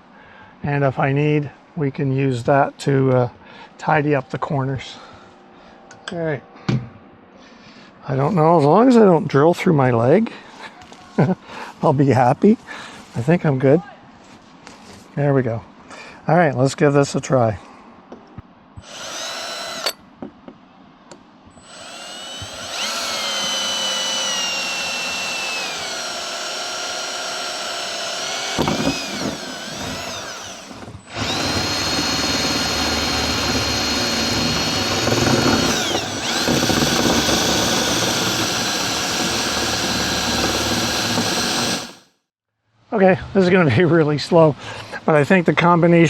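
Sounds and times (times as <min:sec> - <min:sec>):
electric drill whining through metal: 0:18.8 - 0:20.0, 0:21.6 - 0:42.1.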